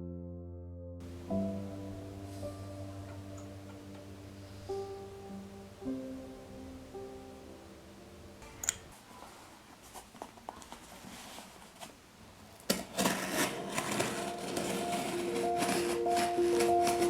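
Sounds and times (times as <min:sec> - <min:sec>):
soft background music: 0:00.0 - 0:08.9, 0:13.3 - 0:17.0
rustling: 0:08.4 - 0:17.0.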